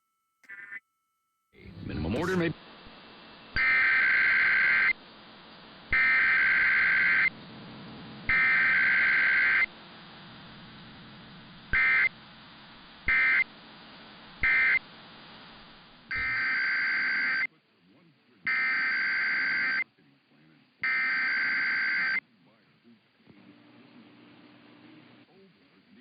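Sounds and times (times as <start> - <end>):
short digital blips: 2.2 - 2.5.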